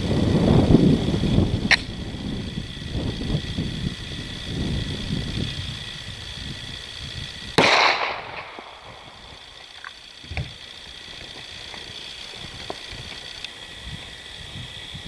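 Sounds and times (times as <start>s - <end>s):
pistol shot with echo: 7.6s - 9.2s.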